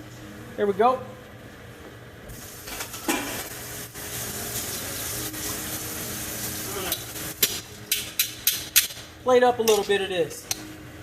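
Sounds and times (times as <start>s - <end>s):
noodles sizzling in a pan: 2.3s - 7.6s.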